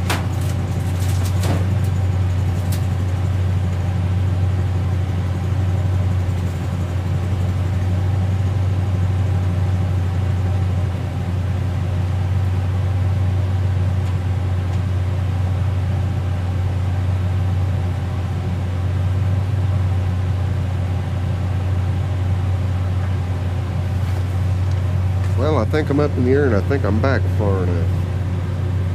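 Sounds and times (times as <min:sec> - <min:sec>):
engine running steadily: 0:00.0 - 0:28.9.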